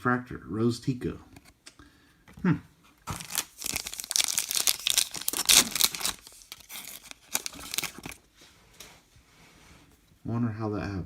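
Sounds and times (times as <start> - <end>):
card packaging crinkling: 3.0 - 8.3.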